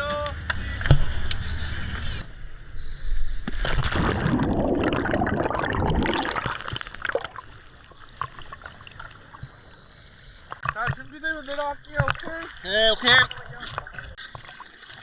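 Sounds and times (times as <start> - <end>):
water splashing and rushing: 3.5 - 9.3
bubbling and small pops: 3.5 - 9.6, 10.5 - 11.2, 11.9 - 12.5.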